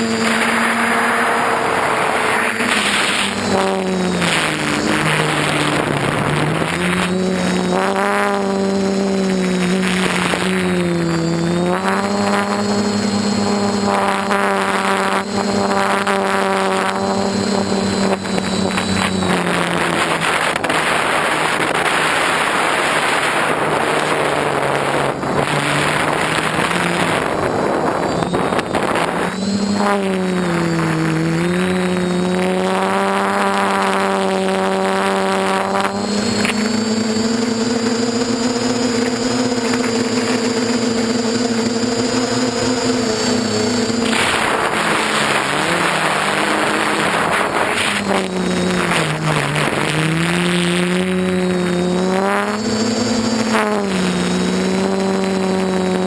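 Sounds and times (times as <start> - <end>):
loud rushing noise: 0.0 - 12.1, 38.2 - 51.7
quadcopter motors humming: 0.0 - 56.0.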